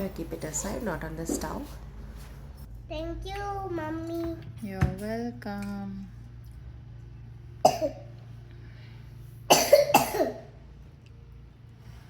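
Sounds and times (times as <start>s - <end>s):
low steady hum: 0.0s - 12.0s
person coughing: 7.6s - 8.1s, 9.5s - 10.5s.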